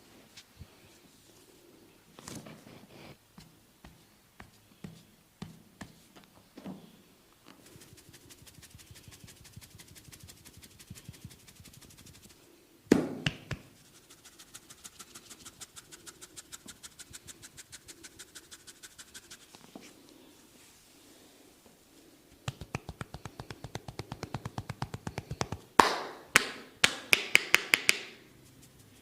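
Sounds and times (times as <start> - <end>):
hands tapping massage: 12.9 - 13.7, 22.3 - 28.2.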